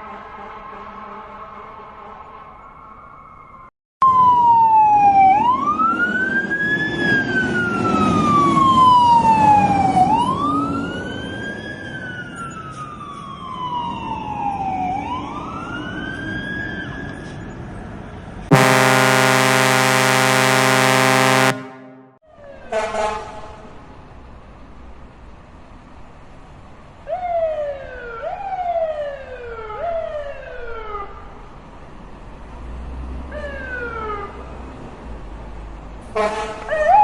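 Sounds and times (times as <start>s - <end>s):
fire truck siren wailing: 2.6s - 17.0s, 18.5s - 22.2s
air horn blast: 18.5s - 22.2s.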